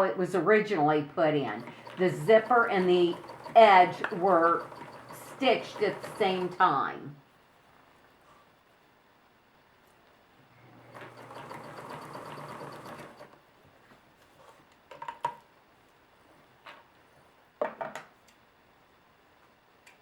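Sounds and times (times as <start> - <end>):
sewing machine stitching: 1.4 - 6.8, 10.8 - 13.3.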